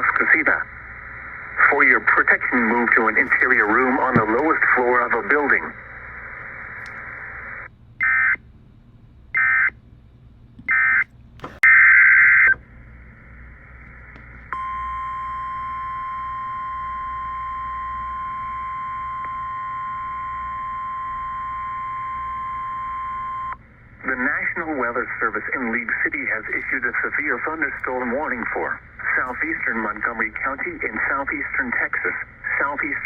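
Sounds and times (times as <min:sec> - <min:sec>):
faint radio hiss: 0:00.0 - 0:07.7, 0:22.4 - 0:33.0
steady warning alarm tone: 0:09.3 - 0:09.8, 0:10.7 - 0:12.6, 0:14.5 - 0:30.3.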